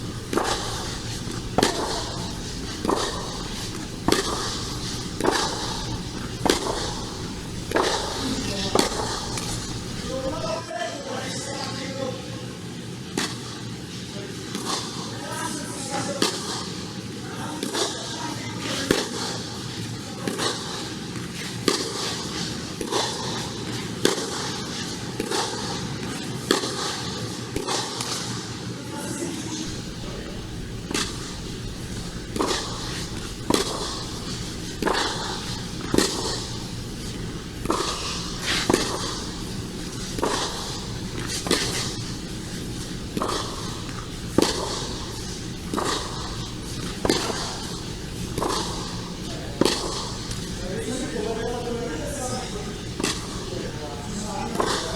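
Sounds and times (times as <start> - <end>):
ball hitting racket strings: 0.0 - 10.5, 29.6 - 54.9
tennis ball bouncing: 0.0 - 10.5, 29.6 - 54.9.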